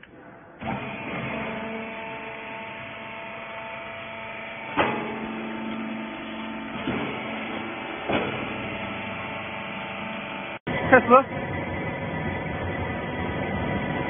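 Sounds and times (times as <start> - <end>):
baler machine hum: 0.6 - 14.0
sharp machine clunks: 4.6 - 9.4.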